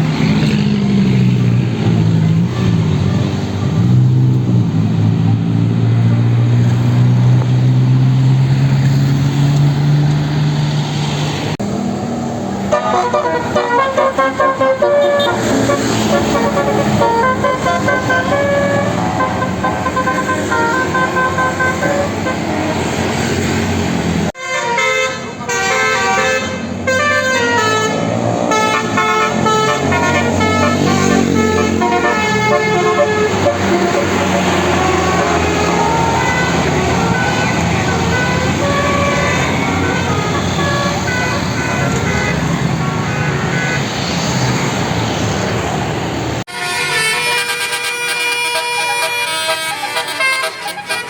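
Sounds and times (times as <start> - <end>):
bus engine pulling away: 0.0 - 24.4, 26.5 - 43.5
multi-tone bus air horn melody: 12.6 - 22.9, 24.4 - 44.0, 46.5 - 51.0.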